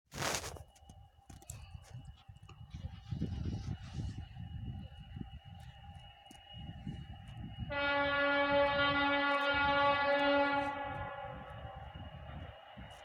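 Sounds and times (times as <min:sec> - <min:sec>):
locomotive horn blast: 0:07.7 - 0:11.7.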